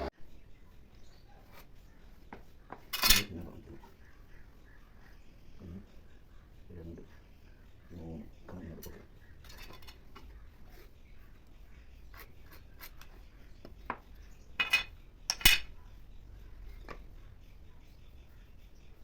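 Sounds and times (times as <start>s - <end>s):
metallic clatters: 2.9s - 3.4s, 14.6s - 15.8s.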